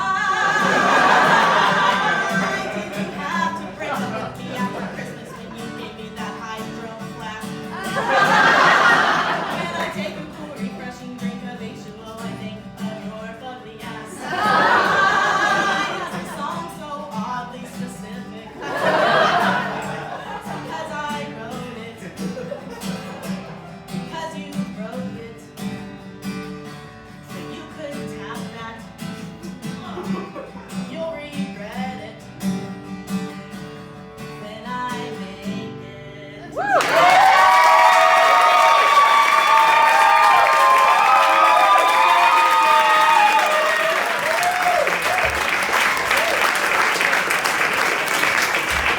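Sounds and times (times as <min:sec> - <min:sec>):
woman singing: 0:00.0 - 0:00.7, 0:02.1 - 0:07.7, 0:09.6 - 0:14.3, 0:20.6 - 0:22.4, 0:24.1 - 0:25.6, 0:27.3 - 0:29.0, 0:29.8 - 0:32.4, 0:34.4 - 0:36.6
acoustic guitar strummed: 0:00.0 - 0:18.6, 0:19.4 - 0:36.6.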